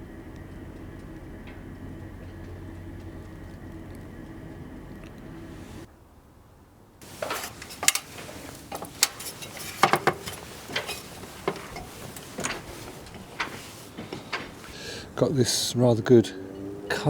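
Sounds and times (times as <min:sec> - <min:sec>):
light metallic clinks and knocks: 0:07.0 - 0:14.8.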